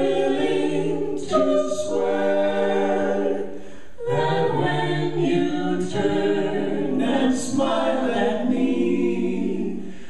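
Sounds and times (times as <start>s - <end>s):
a cappella ensemble singing: 0.0s - 10.0s.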